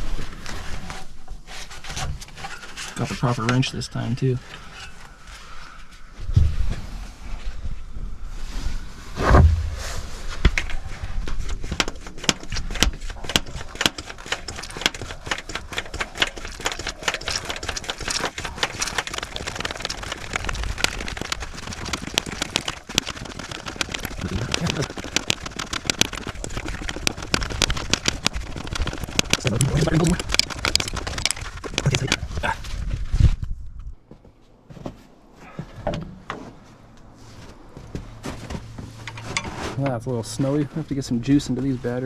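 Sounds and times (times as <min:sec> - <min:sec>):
heavy thump: 0:09.2 - 0:10.6
rapid clattering: 0:11.6 - 0:32.3.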